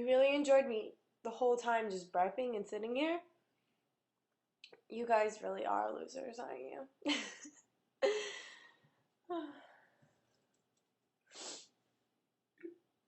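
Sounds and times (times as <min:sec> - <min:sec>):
woman sighing: 0:08.0 - 0:08.7, 0:09.3 - 0:09.8.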